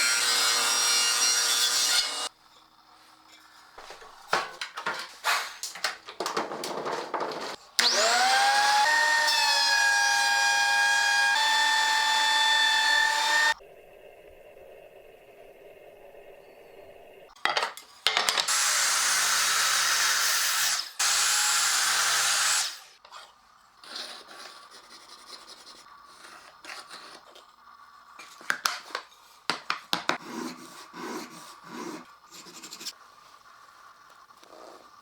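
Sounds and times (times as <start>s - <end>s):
rubbing and scraping on wood: 3.2s - 7.6s
power tool running on wood: 7.8s - 13.6s
sharp knocks and taps: 28.5s - 30.2s.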